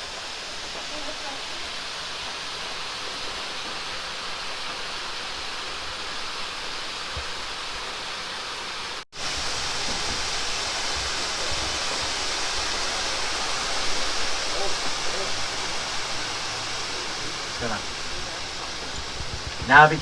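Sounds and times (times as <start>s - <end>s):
steady rushing noise: 8.9s - 20.0s
low rumbling: 9.2s - 20.0s.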